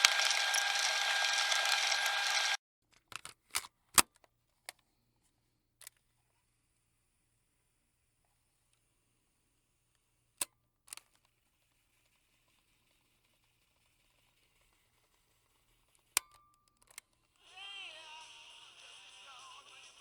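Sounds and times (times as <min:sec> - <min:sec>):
tape hiss: 0:00.0 - 0:02.6, 0:17.4 - 0:20.0.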